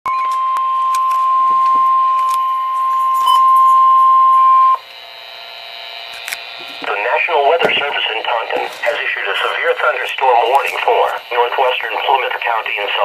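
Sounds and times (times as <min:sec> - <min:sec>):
faint radio hiss: 0:06.8 - 0:13.0.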